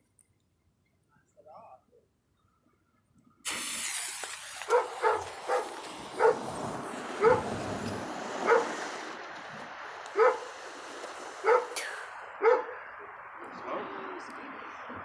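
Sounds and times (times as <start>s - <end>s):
firework fountain hissing: 3.4s - 15.0s
dog barking: 4.6s - 6.6s, 7.2s - 7.6s, 8.4s - 9.0s, 10.1s - 10.6s, 11.4s - 11.8s, 12.4s - 12.9s.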